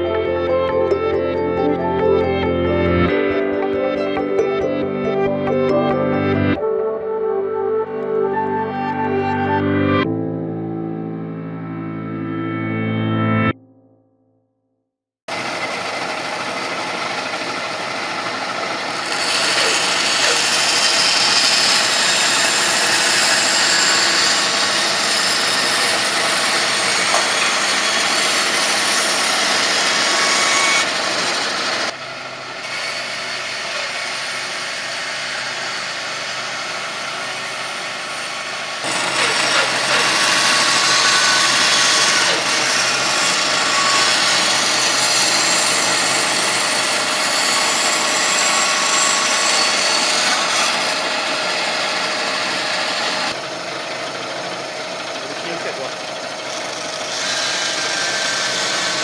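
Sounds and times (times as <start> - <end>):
band saw cutting wood: 15.3 - 59.0.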